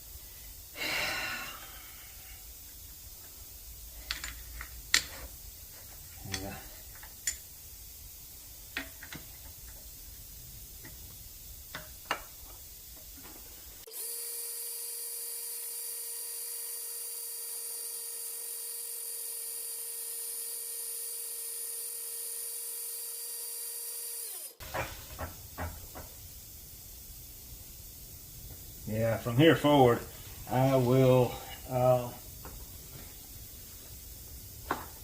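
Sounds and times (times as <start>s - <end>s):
drill whining into metal: 13.9s - 24.8s.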